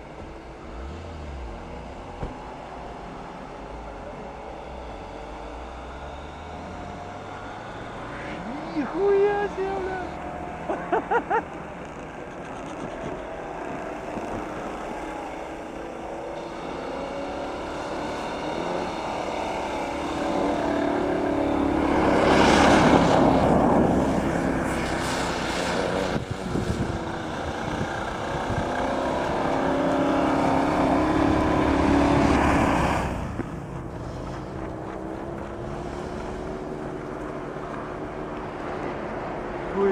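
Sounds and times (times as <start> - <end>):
engine revving off-road: 0.0 - 39.9
rushing noise: 12.3 - 39.5.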